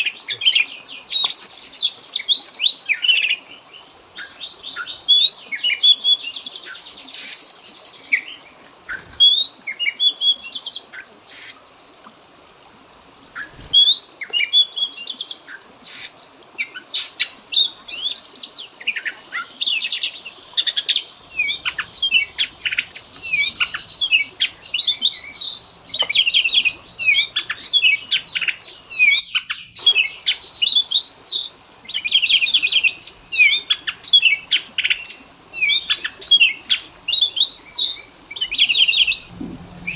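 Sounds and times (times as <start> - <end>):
magpie-robin singing: 13.4 - 39.9.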